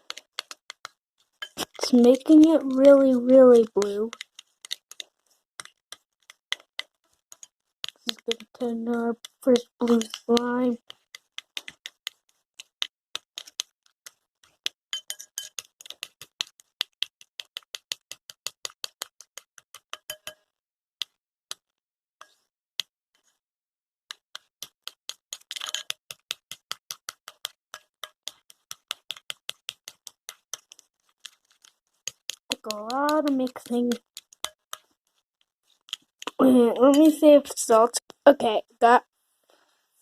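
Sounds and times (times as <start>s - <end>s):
utensil clicking against container: 0.0s - 2.5s, 3.6s - 8.6s, 9.2s - 20.4s, 24.1s - 34.9s.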